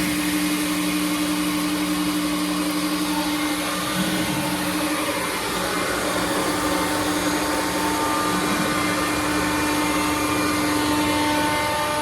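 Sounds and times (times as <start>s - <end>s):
cnc router machine whine: 0.0s - 12.0s
vacuum table hiss: 0.0s - 12.0s.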